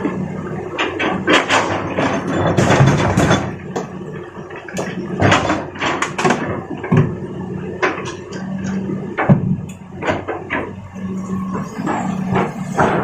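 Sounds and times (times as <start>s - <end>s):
diesel engine running: 0.0s - 13.0s.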